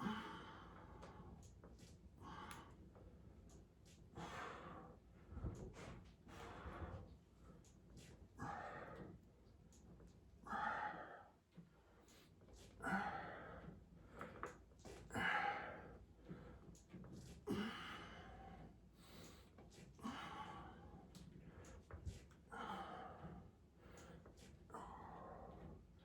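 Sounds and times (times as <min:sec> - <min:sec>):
man breathing hard: 0:04.1 - 0:05.0, 0:06.3 - 0:07.1, 0:08.4 - 0:09.2, 0:10.5 - 0:11.4, 0:12.8 - 0:13.8, 0:17.5 - 0:21.9.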